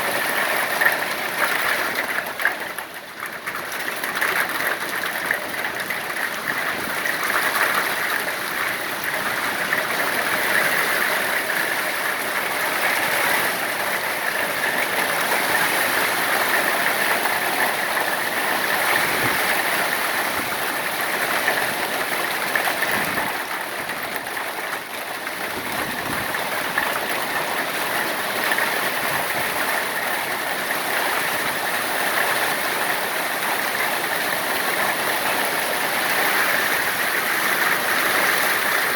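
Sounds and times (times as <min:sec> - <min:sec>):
hail and rain clattering: 0:00.0 - 0:38.9.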